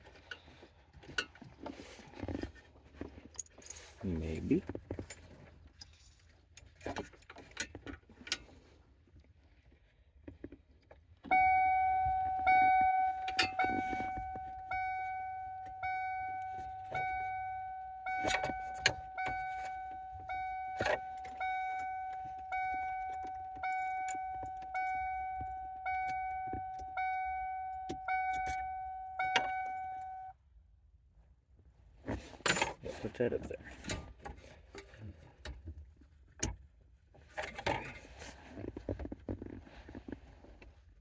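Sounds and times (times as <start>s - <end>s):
car warning chime dinging: 11.3s - 30.4s.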